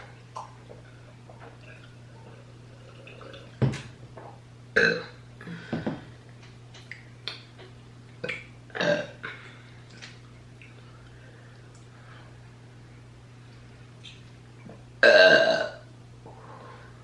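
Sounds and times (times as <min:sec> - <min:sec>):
person burping: 0:04.8 - 0:05.9, 0:08.2 - 0:09.4, 0:15.0 - 0:15.8.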